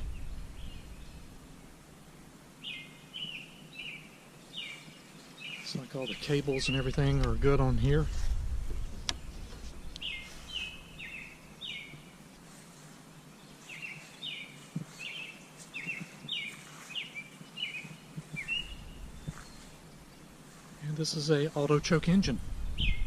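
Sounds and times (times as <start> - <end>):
songbird chirping: 0.0 - 23.0.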